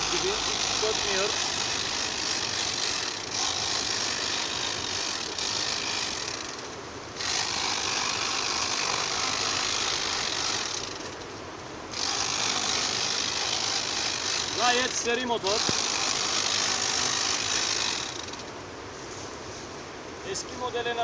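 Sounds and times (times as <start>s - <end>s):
tea harvesting machine buzzing: 0.0s - 11.0s, 12.0s - 18.3s.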